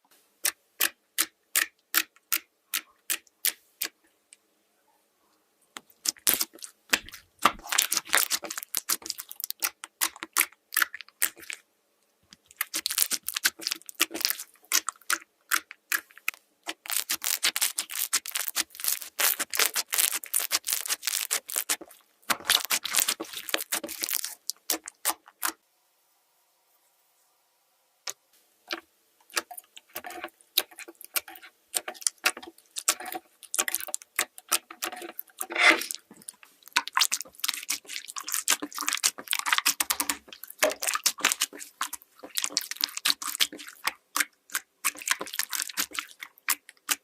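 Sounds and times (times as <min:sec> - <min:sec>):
slime squeezed clicking and popping: 0:12.5 - 0:25.6, 0:30.6 - 0:47.0.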